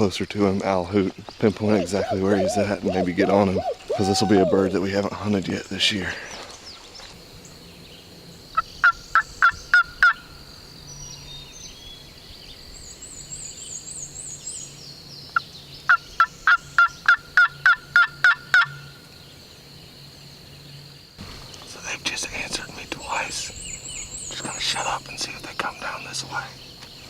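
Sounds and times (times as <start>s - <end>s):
turkey call yelps: 1.9s - 4.8s, 8.6s - 10.2s, 15.9s - 19.0s.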